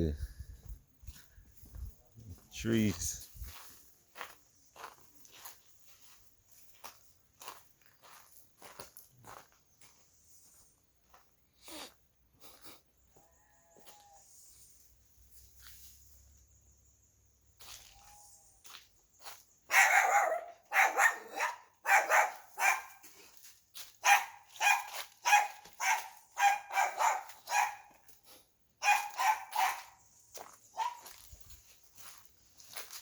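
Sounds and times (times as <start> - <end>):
dog barking: 19.7 - 23.0, 24.0 - 28.0, 28.8 - 30.0, 30.7 - 31.1.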